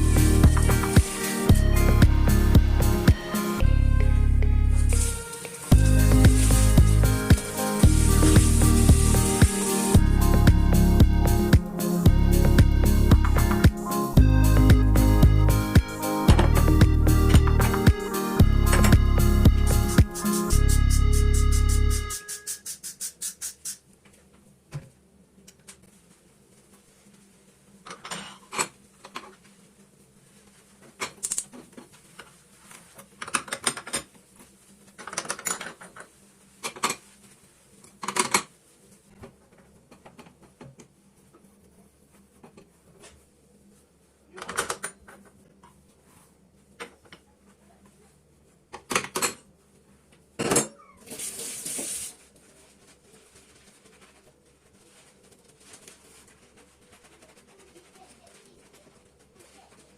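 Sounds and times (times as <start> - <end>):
brief hiss: 22.1 - 23.8.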